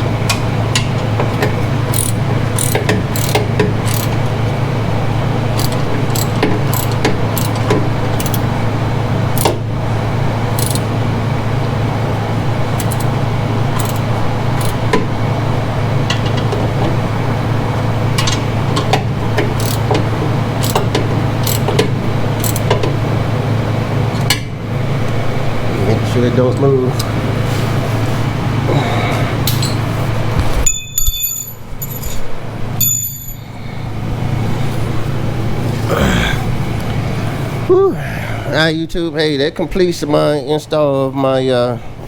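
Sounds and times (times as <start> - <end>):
steady low hum: 0.0 - 30.6, 32.4 - 39.2
hand tools clicking on metal: 0.8 - 4.2, 5.6 - 8.5, 10.6 - 10.9, 12.8 - 13.2, 13.8 - 14.8, 19.6 - 20.0, 20.6 - 21.8.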